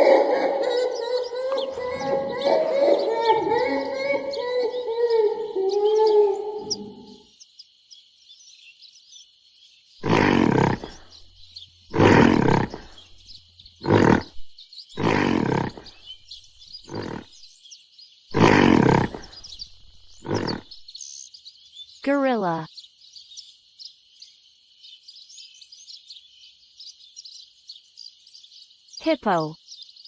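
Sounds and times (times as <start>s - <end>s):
gorilla roaring: 0.0s - 7.2s, 10.0s - 11.1s, 11.9s - 13.0s, 13.8s - 14.4s, 15.0s - 16.0s, 16.8s - 17.3s, 18.3s - 19.4s, 20.2s - 20.7s
birds chirping: 0.0s - 30.0s.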